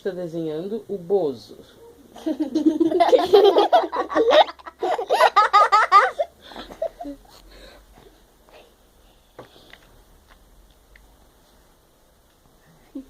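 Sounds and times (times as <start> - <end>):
girls laughing: 2.1 - 7.3.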